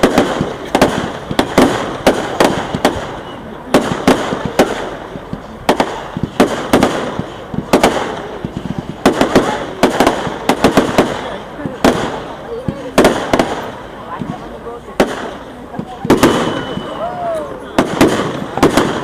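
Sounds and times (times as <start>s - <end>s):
firework shell bursts: 15.0s - 19.0s.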